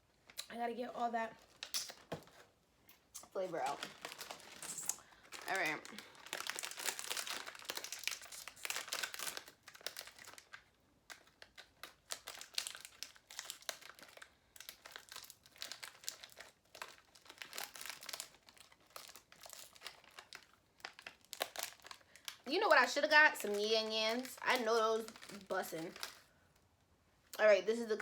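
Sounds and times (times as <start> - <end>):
plastic packaging crinkling: 1.3 - 26.4.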